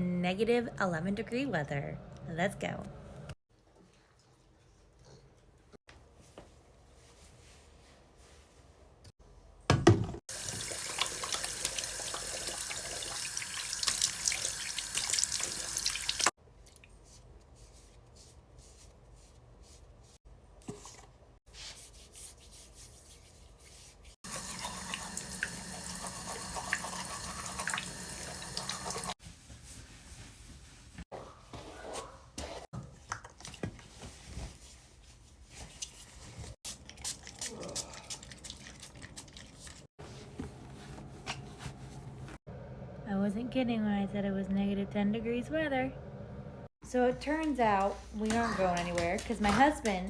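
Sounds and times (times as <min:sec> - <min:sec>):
tap water running into sink: 0:10.3 - 0:16.3, 0:24.3 - 0:29.2.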